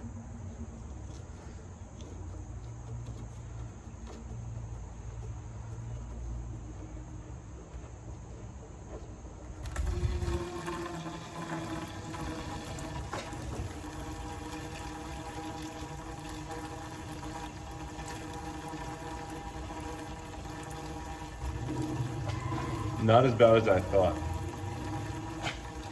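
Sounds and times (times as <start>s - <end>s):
gasoline pouring into container: 9.6s - 25.9s.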